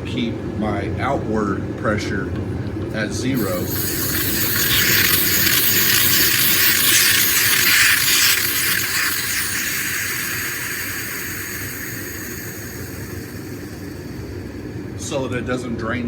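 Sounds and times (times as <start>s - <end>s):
compressed air hissing: 3.4s - 15.1s.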